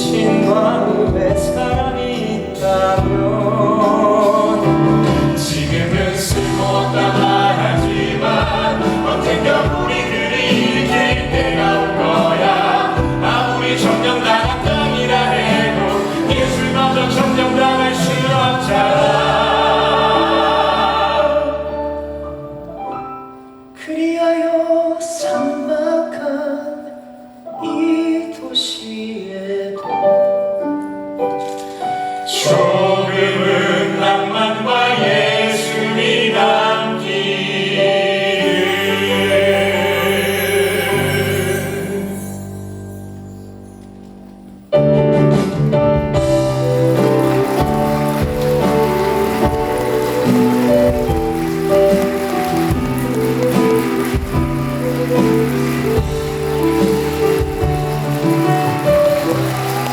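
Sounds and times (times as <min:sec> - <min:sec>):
cast singing together: 0:00.0 - 0:22.4, 0:32.3 - 0:42.5
live show accompaniment: 0:00.0 - 0:59.9.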